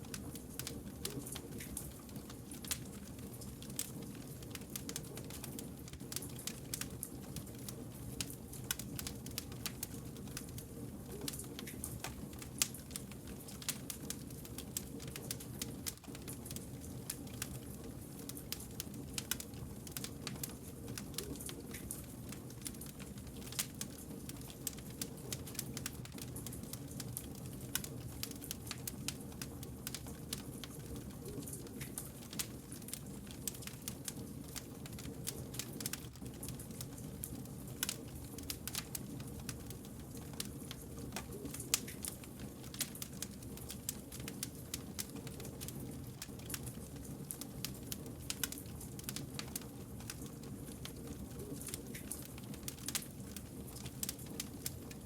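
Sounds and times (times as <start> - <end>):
low rumble of burning logs: 0.0 - 55.0
wood fire crackling: 0.0 - 55.0.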